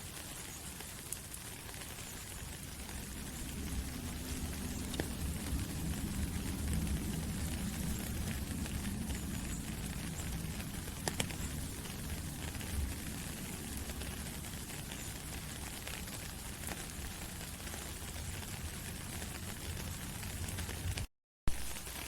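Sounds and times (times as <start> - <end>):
rain pattering on leaves: 0.0 - 22.0
low rumble: 2.1 - 14.2.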